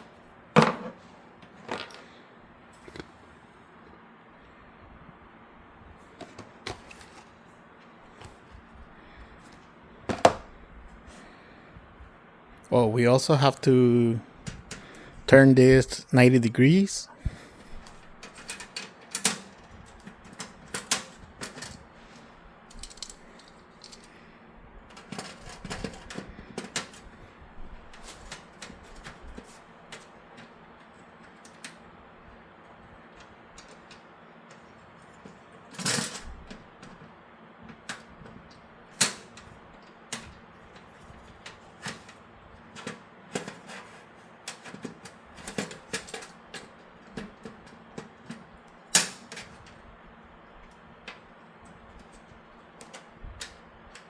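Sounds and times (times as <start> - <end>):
computer case parts clicking: 18.2 - 21.8, 35.8 - 49.8, 50.7 - 54.0.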